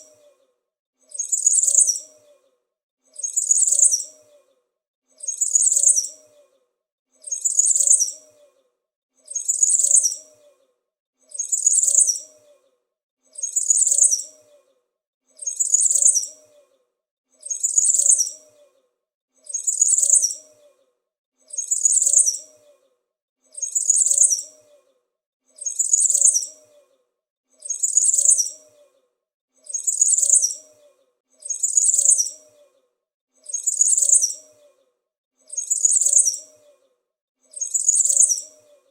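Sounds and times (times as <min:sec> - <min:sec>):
small bird chirping: 0:00.0 - 0:00.4, 0:01.1 - 0:02.5, 0:03.2 - 0:04.5, 0:05.2 - 0:06.6, 0:07.2 - 0:08.6, 0:09.2 - 0:10.6, 0:11.3 - 0:12.7, 0:13.3 - 0:14.7, 0:15.4 - 0:16.8, 0:17.4 - 0:18.8, 0:19.4 - 0:20.8, 0:21.4 - 0:22.9, 0:23.5 - 0:24.9, 0:25.5 - 0:27.0, 0:27.6 - 0:29.0, 0:29.6 - 0:32.8, 0:33.4 - 0:36.9, 0:37.5 - 0:38.9.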